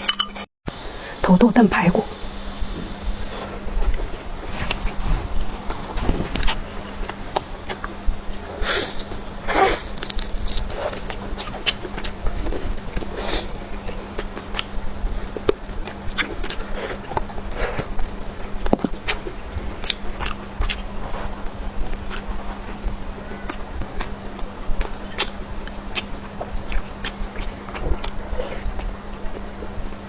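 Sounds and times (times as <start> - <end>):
steady low hum: 0.0 - 30.0
slurping: 3.2 - 19.2
chewing and mouth smacks: 6.4 - 30.0.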